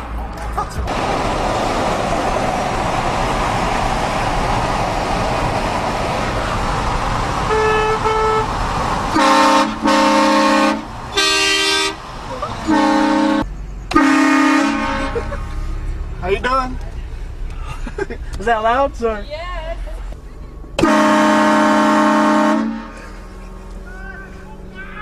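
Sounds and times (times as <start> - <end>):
road noise: 0.0 - 25.0
multi-tone train horn blasts: 7.5 - 8.5, 9.1 - 12.0, 12.6 - 15.2, 20.8 - 23.0.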